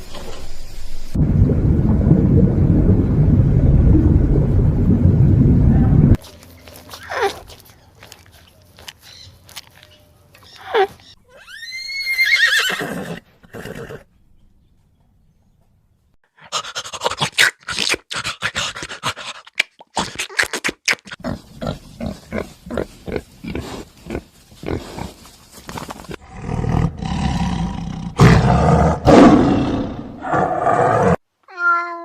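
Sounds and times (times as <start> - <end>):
big cat grunting and roaring: 26.2 - 31.2.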